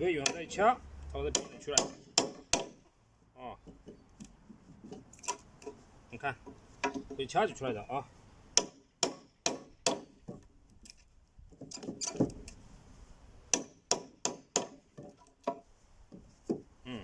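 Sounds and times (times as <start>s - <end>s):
hammer knocking on chisel: 1.3s - 2.8s, 6.4s - 7.2s, 8.6s - 10.4s.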